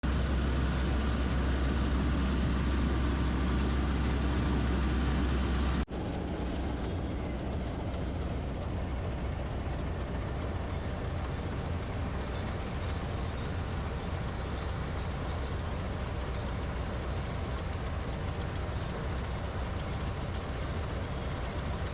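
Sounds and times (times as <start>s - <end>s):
combine harvester engine rumble: 0.0s - 21.9s.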